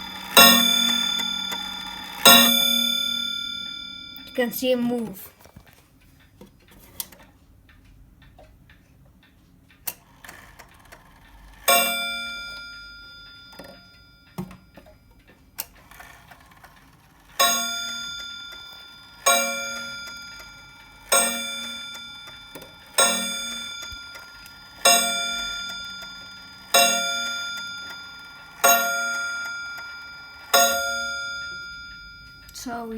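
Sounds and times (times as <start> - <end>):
clock striking a ringing chime: 0.0 - 5.3, 10.2 - 32.9.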